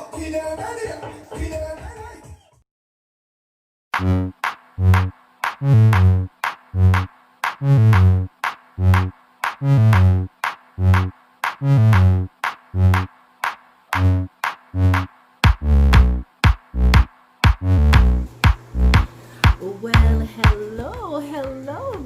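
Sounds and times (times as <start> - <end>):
electronic music with drum machine: 4.0 - 21.1.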